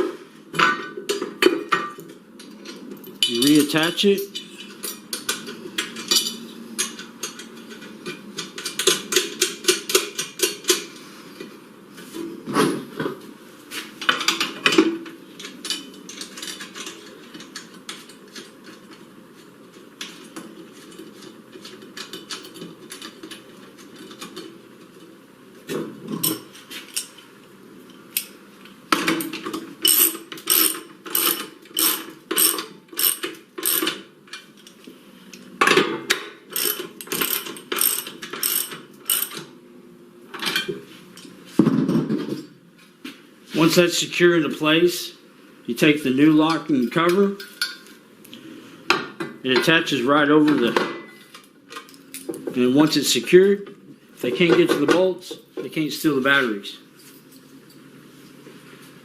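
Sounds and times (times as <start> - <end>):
metal clinks and knocks: 0.6 - 10.9
ratchet wrench clicking: 29.8 - 33.9, 36.5 - 39.4.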